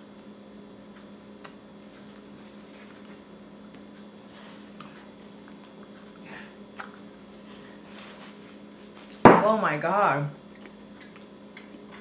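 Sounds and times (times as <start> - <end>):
low electrical hum: 0.0 - 12.0
person chewing: 10.5 - 12.0.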